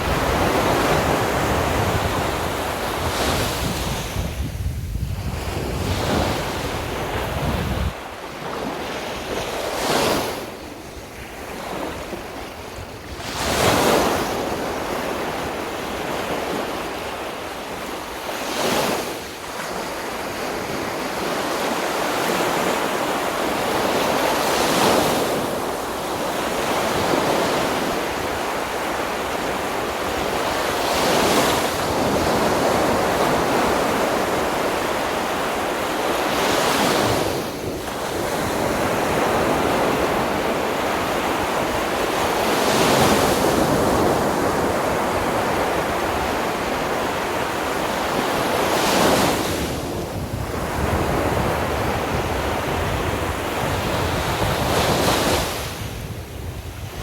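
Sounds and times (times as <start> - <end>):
sea waves breaking on beach: 0.0 - 57.0
wind rumble on microphone: 0.0 - 57.0.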